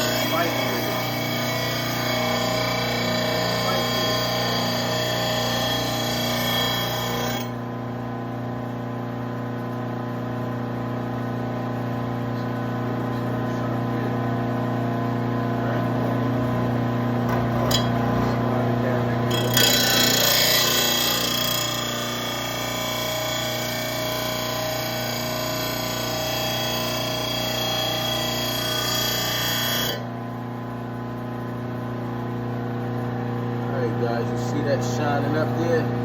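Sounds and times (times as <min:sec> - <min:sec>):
sharpener motor hum: 0:00.0 - 0:07.6, 0:19.3 - 0:30.1.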